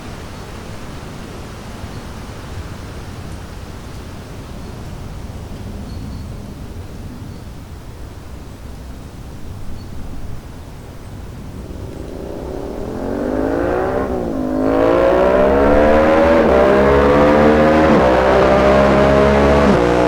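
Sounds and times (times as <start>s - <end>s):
motorcycle engine accelerating: 10.7s - 20.0s
gear upshifts: 11.1s - 20.0s.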